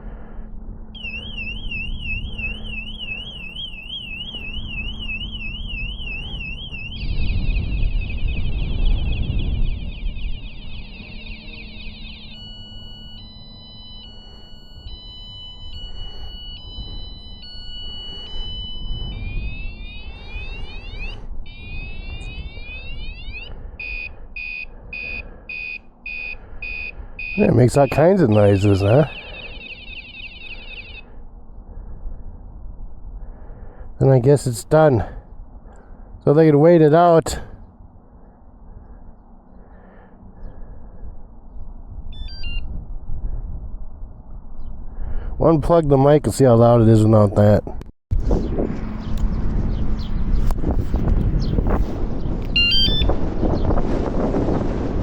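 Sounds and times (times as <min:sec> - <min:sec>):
warbling alarm siren: 0:00.0 - 0:31.4, 0:42.0 - 0:43.0, 0:50.4 - 0:53.8.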